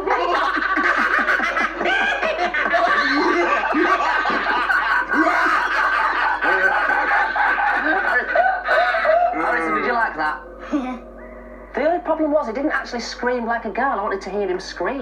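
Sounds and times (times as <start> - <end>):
people laughing: 0.0 - 11.0.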